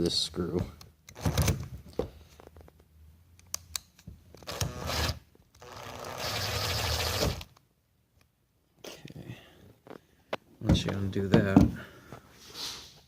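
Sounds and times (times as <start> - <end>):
cordless screwdriver running: 4.4 - 7.5.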